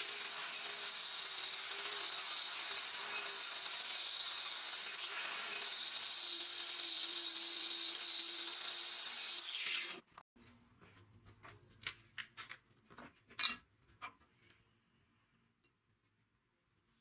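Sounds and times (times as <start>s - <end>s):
electric power tool running: 0.0s - 10.0s.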